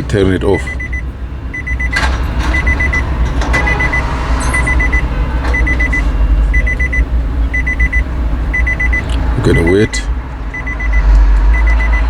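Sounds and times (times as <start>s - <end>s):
steady low hum: 0.0s - 12.0s
rapid high electronic beeps: 3.6s - 10.0s, 10.6s - 12.0s.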